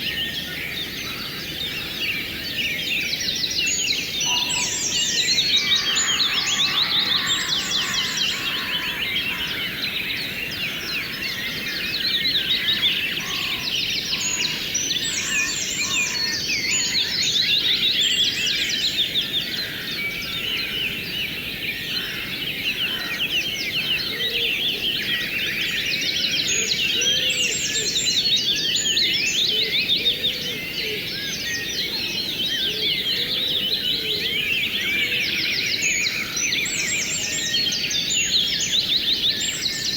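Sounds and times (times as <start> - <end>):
birds chirping: 0.0 - 39.9.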